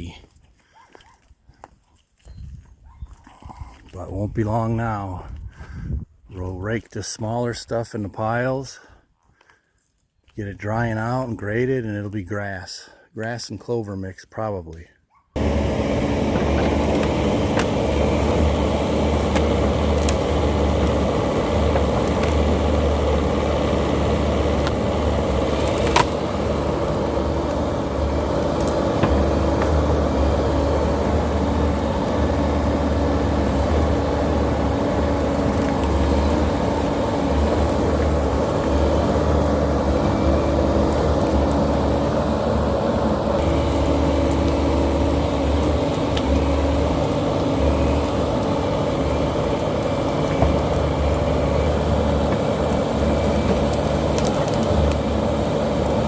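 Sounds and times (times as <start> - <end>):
diesel engine under load: 15.4 - 56.0.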